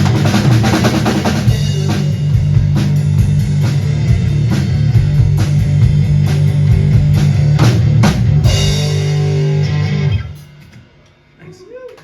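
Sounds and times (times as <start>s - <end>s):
rock band playing: 0.0s - 11.4s
ringing guitar chord with cymbals: 8.5s - 10.6s.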